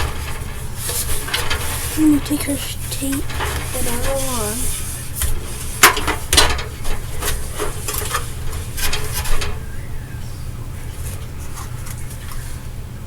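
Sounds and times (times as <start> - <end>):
scratchy rustles and clicks: 0.0 - 9.8
low steady hum: 0.0 - 13.0.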